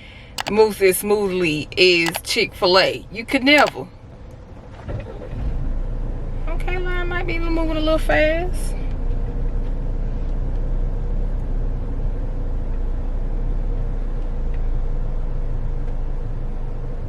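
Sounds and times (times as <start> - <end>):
faint steady hum: 0.0 - 13.4
car engine low rumble: 0.0 - 17.0.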